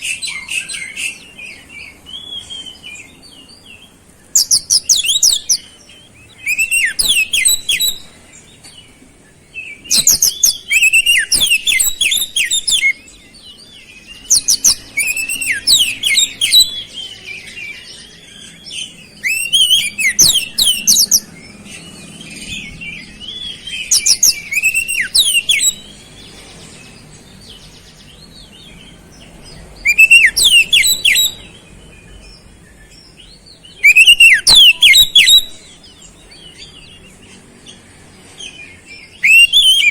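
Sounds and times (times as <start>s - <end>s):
songbird chirping: 0.0s - 39.9s.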